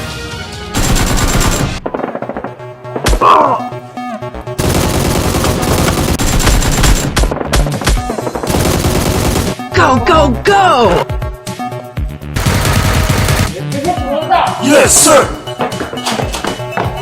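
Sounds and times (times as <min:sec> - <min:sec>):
background music: 0:00.0 - 0:17.0
automatic gunfire bursts: 0:00.8 - 0:01.8.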